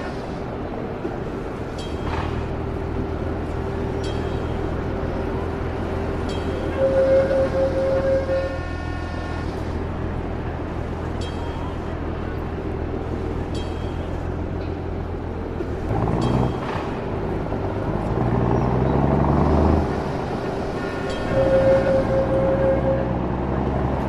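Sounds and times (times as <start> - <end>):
traffic rumble: 0.0 - 24.0
vehicle horn signals: 6.2 - 9.8, 20.8 - 24.0.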